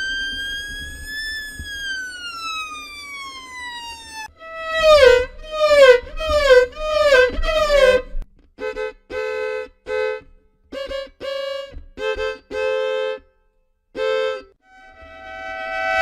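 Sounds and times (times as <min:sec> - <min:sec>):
violin mimicking animal calls: 0:04.4 - 0:08.2.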